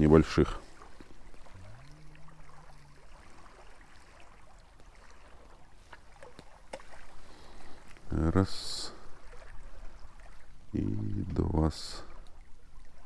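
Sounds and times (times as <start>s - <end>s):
light water movement: 0.0s - 13.0s.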